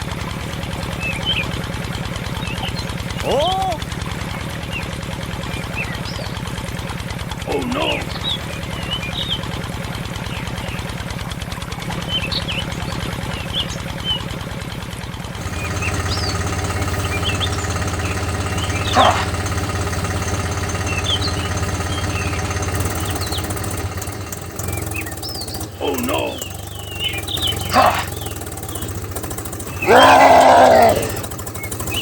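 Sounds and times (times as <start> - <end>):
engine chugging: 0.0 - 32.0
birds chirping: 2.4 - 3.8, 7.4 - 9.5, 15.4 - 32.0.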